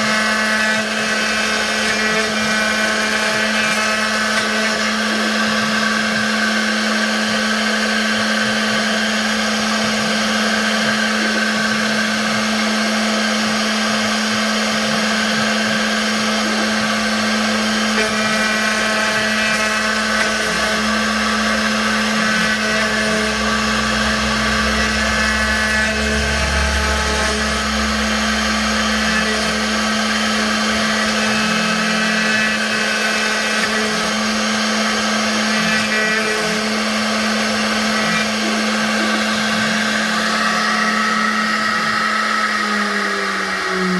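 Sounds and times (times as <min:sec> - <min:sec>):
router spindle whine: 0:00.0 - 0:43.9
low rumble: 0:21.0 - 0:31.0.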